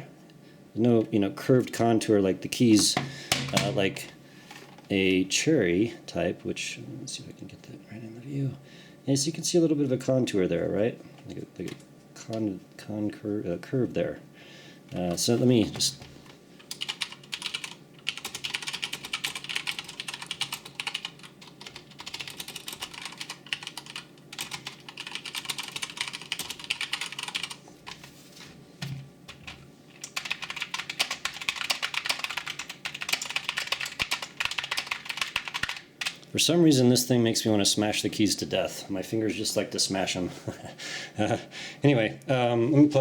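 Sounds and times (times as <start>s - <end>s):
fast typing on mechanical keyboard: 16.7s - 28.0s, 29.3s - 36.2s.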